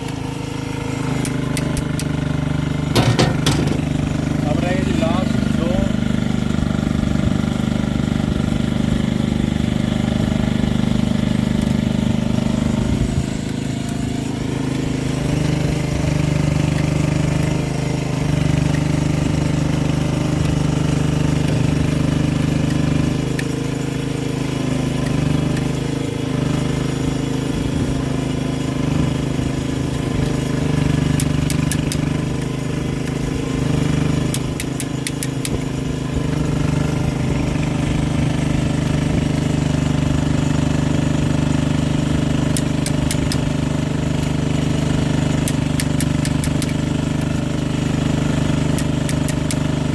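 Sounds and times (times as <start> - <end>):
engine droning: 0.0 - 49.9
quick sharp clicks: 31.1 - 32.1, 34.3 - 35.7, 42.5 - 43.5, 45.3 - 47.4, 48.7 - 49.7.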